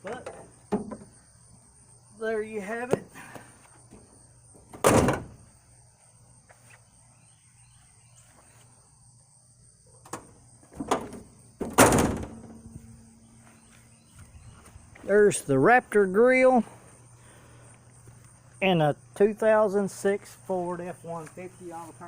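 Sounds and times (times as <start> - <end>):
truck door slamming: 4.6 - 5.4, 10.0 - 12.7.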